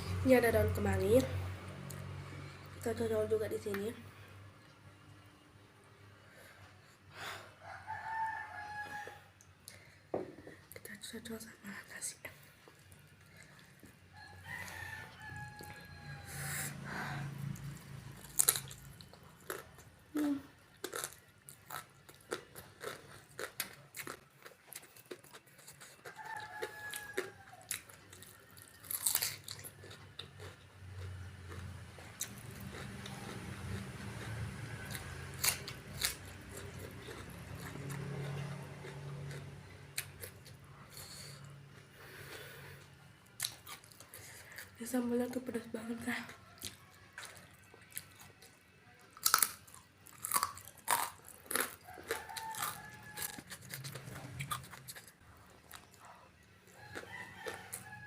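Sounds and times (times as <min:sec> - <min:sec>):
crunchy chewing: 0:12.6 - 0:44.8, 0:46.2 - 0:58.0.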